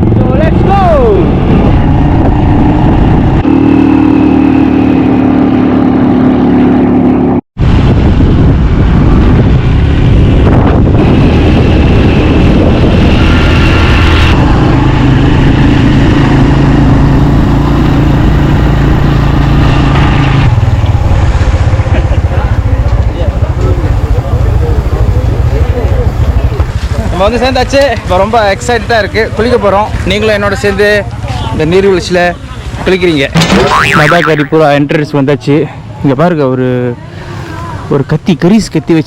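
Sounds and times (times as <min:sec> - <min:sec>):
loud noise: 0:00.0 - 0:22.7, 0:33.3 - 0:34.7
motorcycle engine running: 0:00.0 - 0:32.8.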